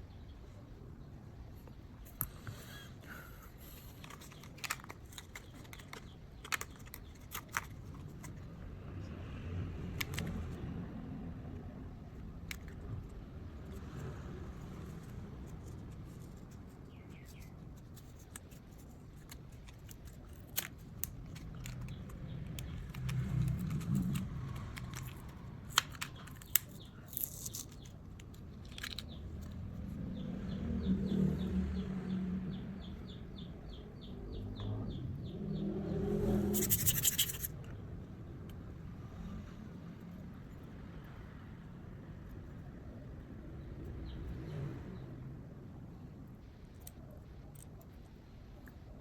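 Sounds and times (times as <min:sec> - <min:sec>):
small tools clicking on watch: 0:16.5 - 0:29.6.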